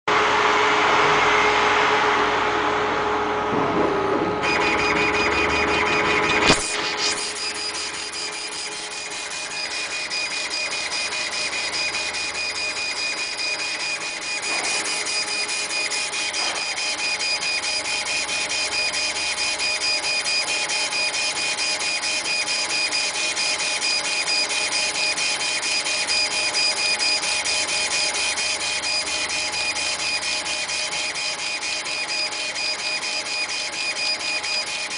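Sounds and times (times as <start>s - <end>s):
motors high whine: 0.4s - 34.9s
sharp click: 6.2s - 7.4s.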